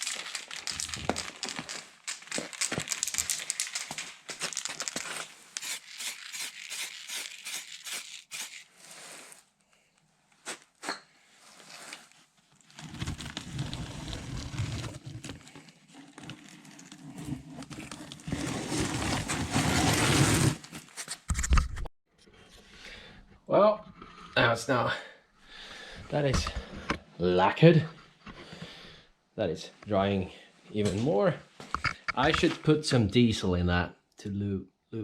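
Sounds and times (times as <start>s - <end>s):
spray can mixing ball rattling: 0.0s - 8.9s
spray can hissing: 5.6s - 8.7s.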